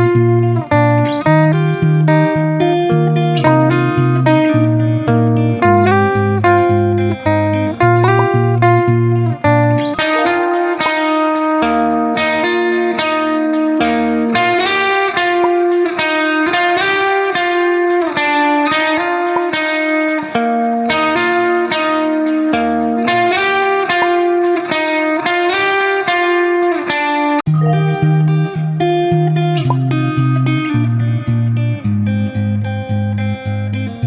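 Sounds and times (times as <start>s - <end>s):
bass line: 0.0s - 10.6s, 27.5s - 34.0s
background music melody: 0.0s - 13.6s, 27.5s - 31.9s.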